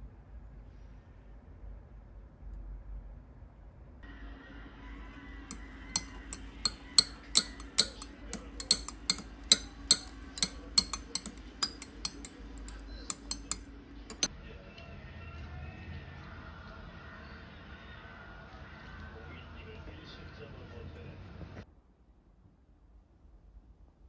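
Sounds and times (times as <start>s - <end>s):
sharp clicks and clinks: 5.5s - 14.3s.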